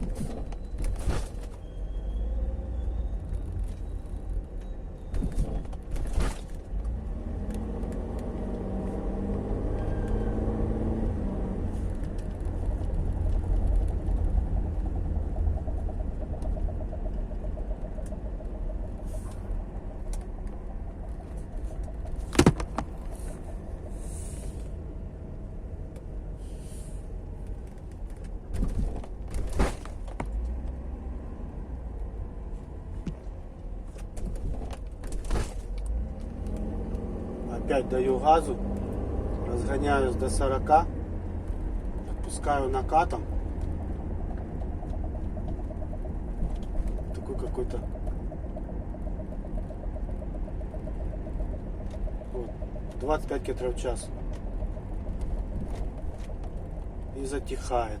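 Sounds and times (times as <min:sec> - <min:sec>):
road and drivetrain rumble: 0:00.0 - 0:58.0
car engine revving: 0:06.8 - 0:24.9, 0:35.5 - 0:58.0.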